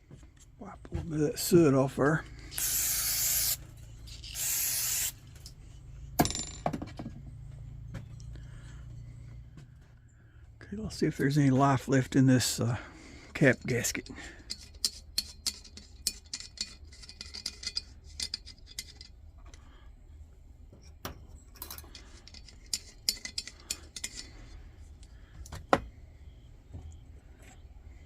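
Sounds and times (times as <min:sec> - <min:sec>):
small metal clicks and clinks: 0:21.5 - 0:24.4.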